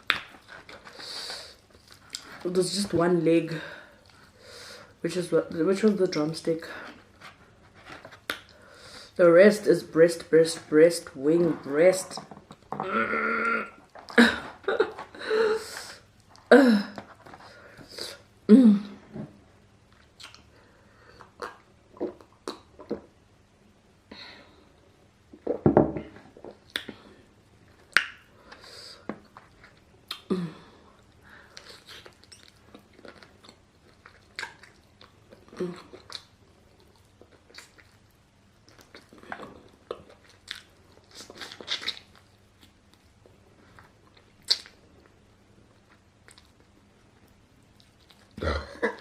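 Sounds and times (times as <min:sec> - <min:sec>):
person chewing food: 0:00.0 - 0:02.5, 0:30.9 - 0:49.0.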